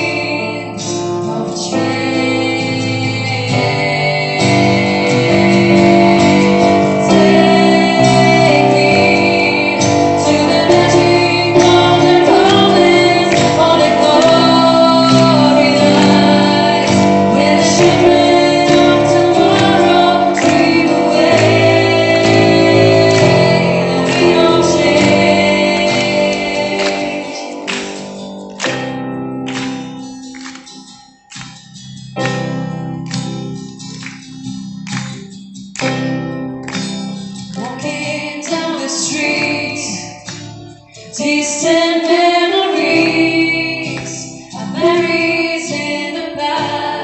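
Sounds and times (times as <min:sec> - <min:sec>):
pop ballad with female singer: 0:00.0 - 0:28.1, 0:37.6 - 0:40.3, 0:41.0 - 0:47.0.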